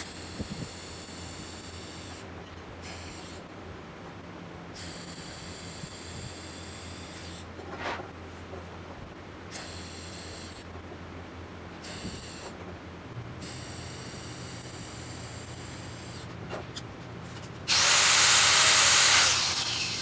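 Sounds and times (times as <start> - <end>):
welding arc hiss: 0.0 - 3.4, 4.8 - 7.5, 9.5 - 10.7, 11.8 - 12.6, 13.4 - 16.3, 17.7 - 20.0.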